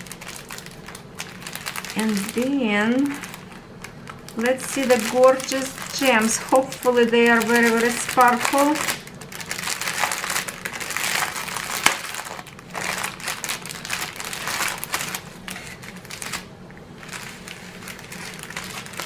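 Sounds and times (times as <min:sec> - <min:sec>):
plastic bags crinkling: 0:00.0 - 0:19.0.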